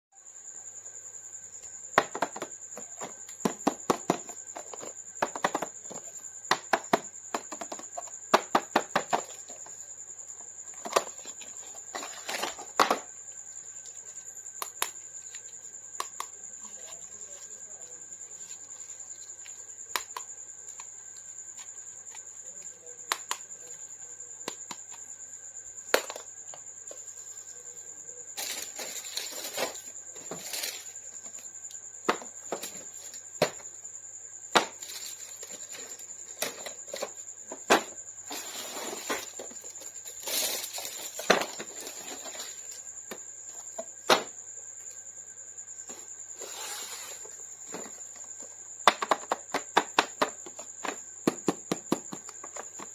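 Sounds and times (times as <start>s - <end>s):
plastic toys clicking and tapping: 48.8s - 52.9s.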